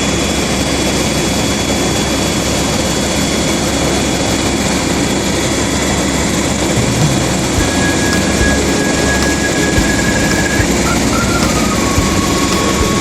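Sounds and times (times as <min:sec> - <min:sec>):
helicopter turbine and rotor drone: 0:00.0 - 0:06.8
thin high whine: 0:06.7 - 0:13.0.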